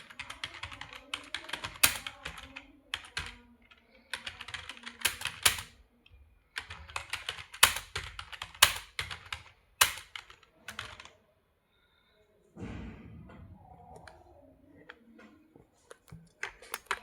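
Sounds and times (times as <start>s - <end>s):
computer keyboard typing: 0.0s - 5.8s, 6.5s - 11.2s, 15.9s - 17.0s.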